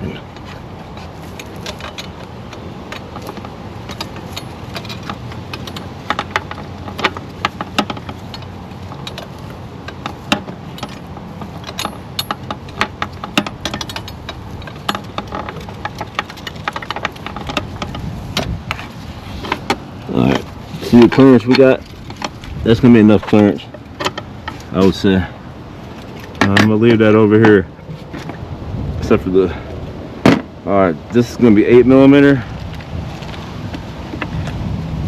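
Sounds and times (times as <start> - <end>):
low background noise: 0.0 - 35.0
metal tool clicks and rattles: 0.9 - 24.9.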